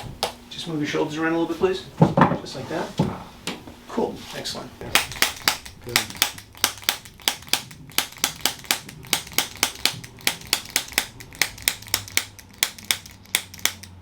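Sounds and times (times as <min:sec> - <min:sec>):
sharp evenly spaced clicks: 0:04.9 - 0:14.0.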